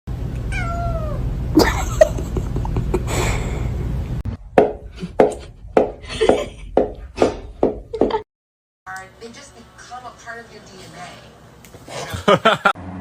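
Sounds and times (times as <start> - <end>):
steady low hum: 0.1 - 8.0.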